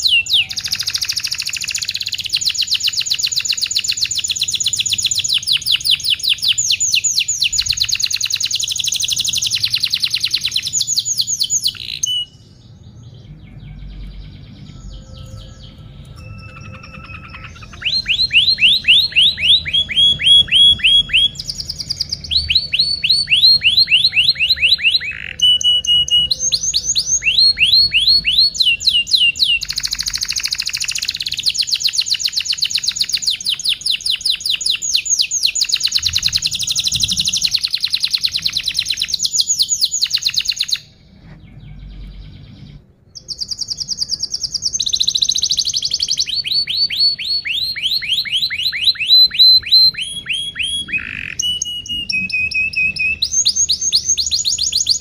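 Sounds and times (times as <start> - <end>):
canary singing trills: 0.0 - 55.0.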